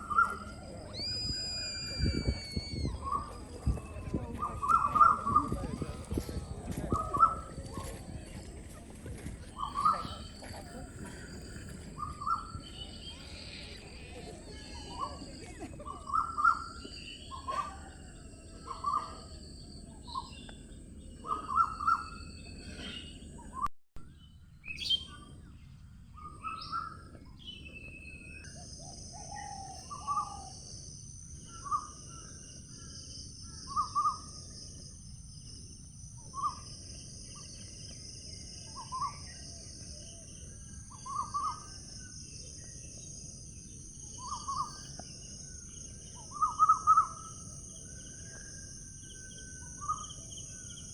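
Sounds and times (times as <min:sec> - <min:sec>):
bird calling: 0:21.2 - 0:23.2, 0:46.2 - 0:47.4.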